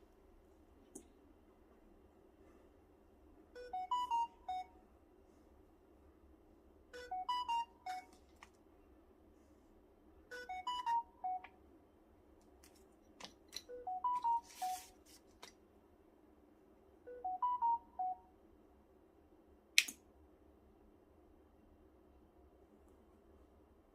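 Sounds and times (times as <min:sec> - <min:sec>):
electronic melody of stepped beeps: 0:03.6 - 0:04.7, 0:06.9 - 0:08.1, 0:10.3 - 0:11.5, 0:13.7 - 0:14.9, 0:17.1 - 0:18.2
clicks: 0:19.8 - 0:20.0.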